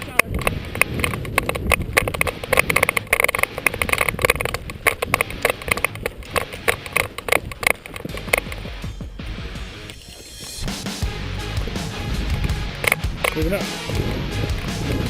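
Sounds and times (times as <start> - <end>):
low rumble: 13.9 - 15.0.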